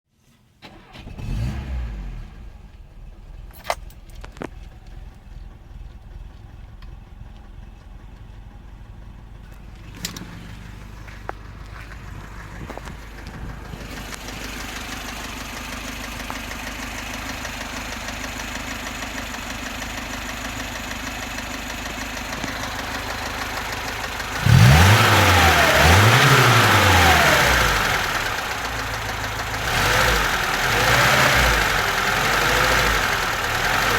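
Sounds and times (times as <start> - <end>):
engine revving: 0.7 - 2.6, 22.3 - 33.9
car engine idling with knock: 2.6 - 33.9.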